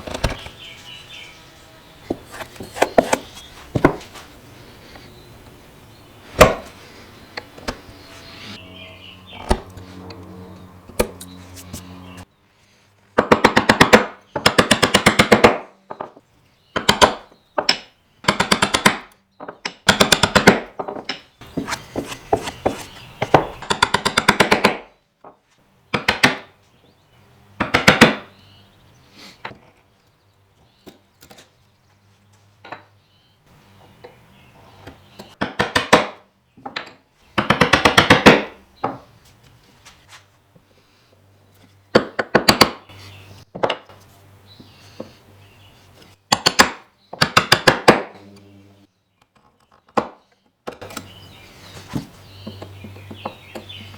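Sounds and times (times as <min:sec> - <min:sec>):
low steady hum: 0:06.8 - 0:12.5.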